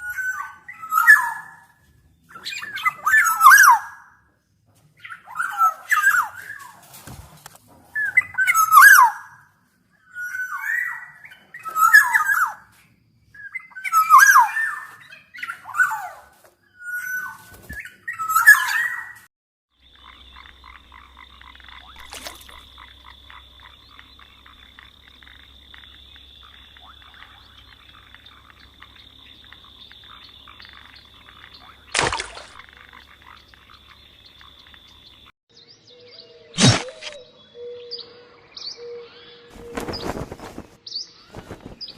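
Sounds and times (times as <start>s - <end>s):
bird croaking calls: 19.8s - 35.3s
sharp click: 36.6s - 37.2s.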